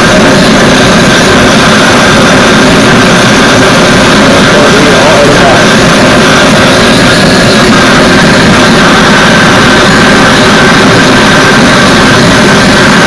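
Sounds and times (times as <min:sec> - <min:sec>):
gas forge burner roaring: 0:00.0 - 0:13.0.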